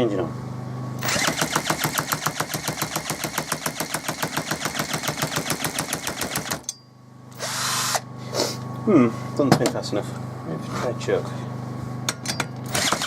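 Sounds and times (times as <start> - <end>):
chainsaw engine cranking: 1.0 - 6.7, 12.6 - 13.0.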